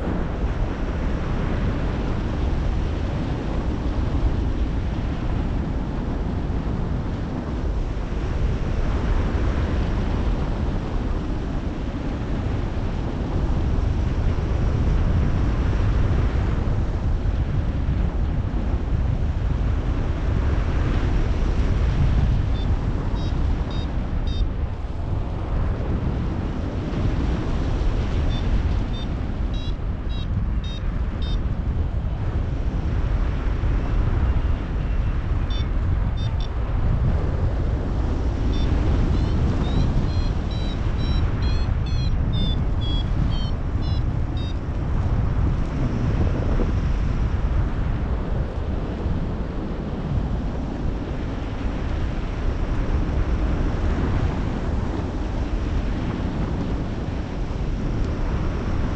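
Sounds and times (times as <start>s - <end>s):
wind buffeting microphone: 0.0s - 58.9s
high electronic beeps: 22.6s - 24.5s, 28.3s - 31.4s, 35.5s - 36.5s, 38.5s - 44.6s.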